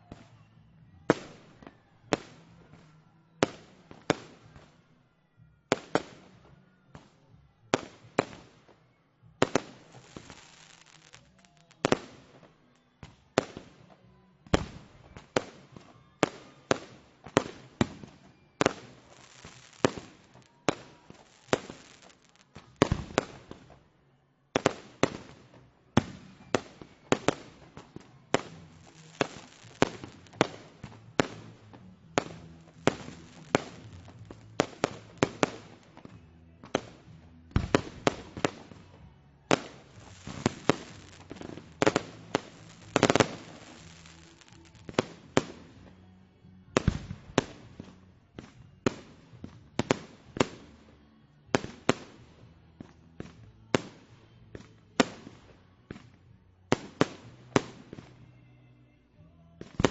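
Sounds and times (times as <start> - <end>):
fireworks bangs: 9.4 - 12.5, 14.5 - 23.8, 24.6 - 38.9, 39.5 - 45.7
fireworks crackling: 9.4 - 12.5, 14.5 - 23.8, 24.6 - 45.8.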